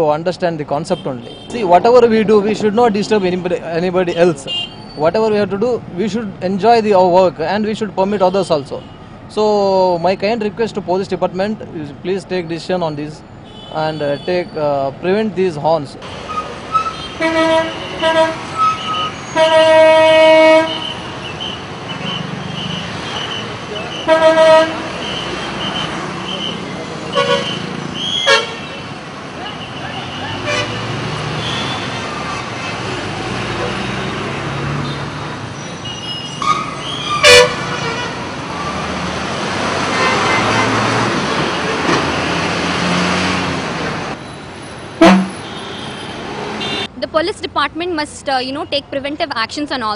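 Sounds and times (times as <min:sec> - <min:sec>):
road traffic: 0:00.0 - 0:49.9
vehicle passing: 0:01.0 - 0:04.5, 0:28.8 - 0:35.6, 0:36.6 - 0:44.2
vehicle air horn blasts: 0:16.3 - 0:21.0, 0:24.0 - 0:25.9, 0:28.2 - 0:28.7, 0:30.4 - 0:31.9, 0:37.2 - 0:38.2, 0:45.0 - 0:46.0
higher-pitched car honks: 0:16.3 - 0:28.9, 0:29.5 - 0:33.0, 0:36.0 - 0:38.8, 0:39.9 - 0:40.9, 0:45.0 - 0:46.9.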